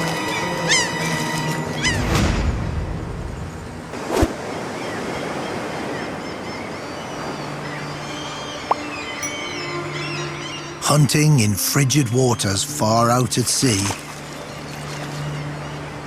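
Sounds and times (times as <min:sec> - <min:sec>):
gulls calling: 0:00.0 - 0:02.4, 0:04.0 - 0:16.0
ocean wash: 0:00.0 - 0:16.0
surf whoosh: 0:02.0 - 0:06.3.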